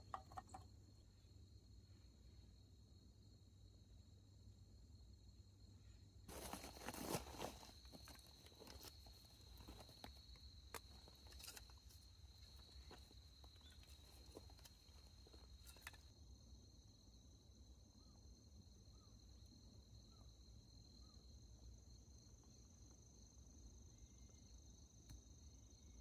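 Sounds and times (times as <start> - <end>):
insects trilling: 5.6 - 26.0.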